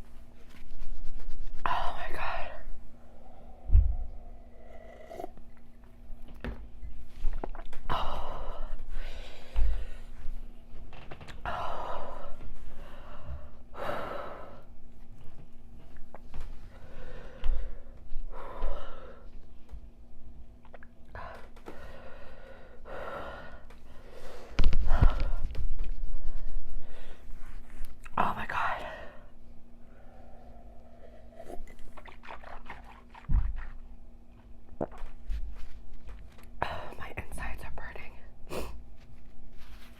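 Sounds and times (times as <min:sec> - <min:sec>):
dull low thump: 0:03.6 - 0:04.1
wet mouth clicks: 0:20.6 - 0:21.0.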